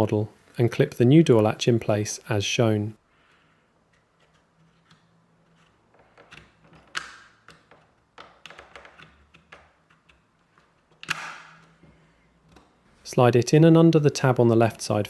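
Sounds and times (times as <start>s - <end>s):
sharp plastic snaps: 6.2s - 11.8s.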